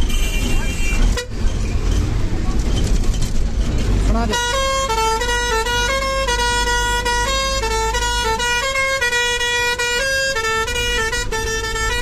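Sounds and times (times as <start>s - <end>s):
bus musical horn playing a tune: 0.0s - 1.4s, 4.3s - 12.0s
bus engine rumble: 0.0s - 12.0s.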